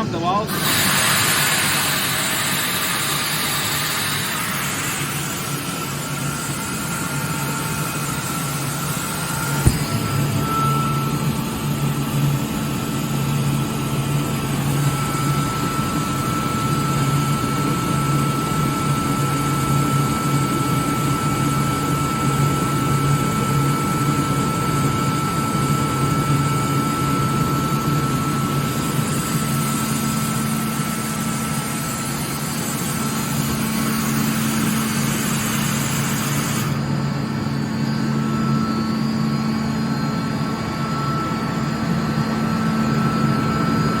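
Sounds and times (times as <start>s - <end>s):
air compressor humming and whining: 0.0s - 44.0s
compressed air hissing: 0.5s - 6.0s.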